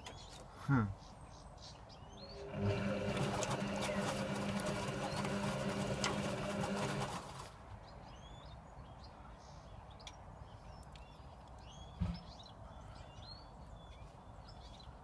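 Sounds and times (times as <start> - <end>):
washing machine motor humming: 2.2 - 7.5.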